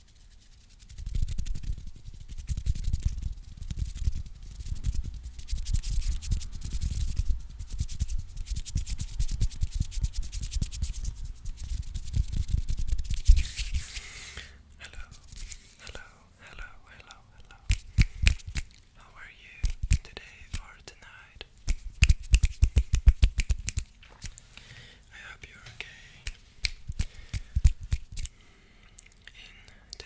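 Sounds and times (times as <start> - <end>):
scissors clicking: 17.7 - 18.7, 26.3 - 28.3.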